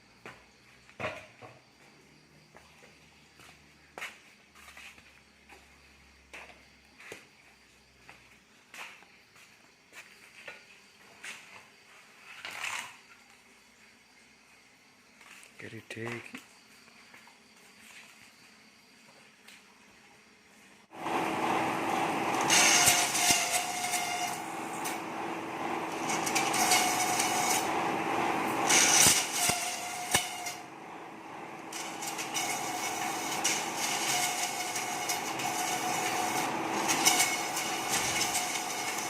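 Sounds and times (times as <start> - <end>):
harsh cutting noise of blades: 20.9 - 39.0
motor hum: 20.9 - 39.0.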